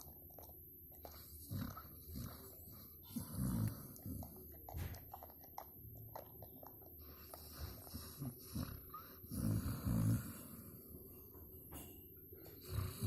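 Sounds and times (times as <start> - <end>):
pet breathing: 0.9 - 11.3
pet snoring: 1.1 - 4.4, 7.0 - 10.9, 12.6 - 13.0.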